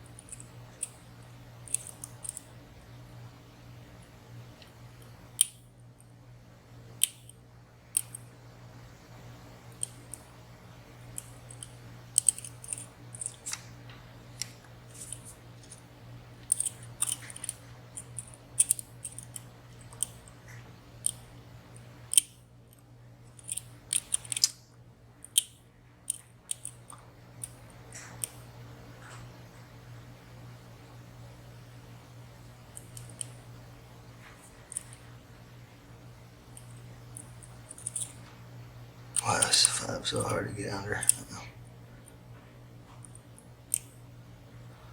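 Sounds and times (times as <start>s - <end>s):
steady low hum: 0.0s - 44.9s
lock picks clicking in padlock: 11.2s - 13.4s, 16.4s - 20.2s, 22.1s - 22.4s, 23.4s - 24.6s, 25.2s - 27.6s, 36.6s - 38.2s.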